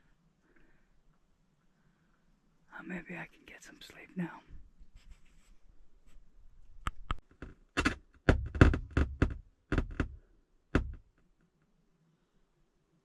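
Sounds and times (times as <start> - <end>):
speaker static crackles and pops: 6.1 - 11.5.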